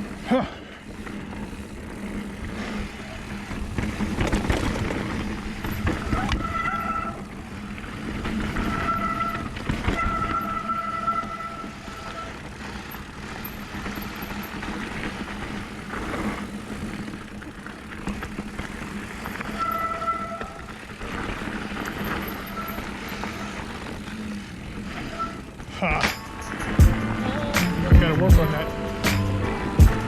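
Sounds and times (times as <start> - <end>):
rumbling wind: 0.0 - 30.0
tyres rolling: 0.0 - 30.0
bike disc brakes squealing: 4.0 - 14.7, 19.0 - 26.8.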